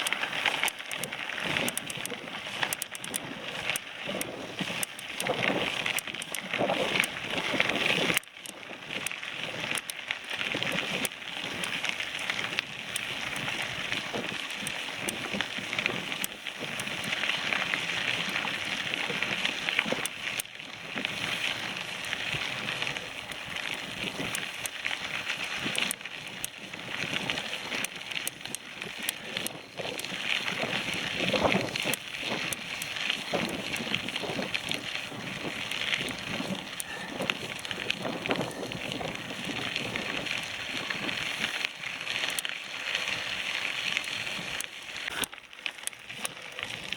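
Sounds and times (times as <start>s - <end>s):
bicycle clicks and rattles: 0.0s - 46.9s
bicycle tyres crunching: 0.0s - 46.9s
wind buffeting microphone: 10.4s - 44.6s.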